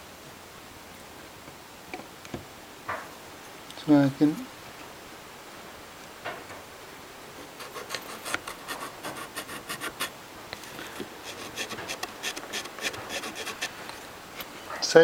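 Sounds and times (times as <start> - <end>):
pencil scratching on wood: 7.5 - 10.1, 10.9 - 13.8.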